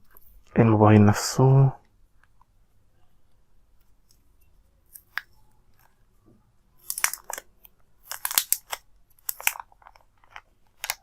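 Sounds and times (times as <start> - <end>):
plastic wrapping crinkling: 6.8 - 11.0.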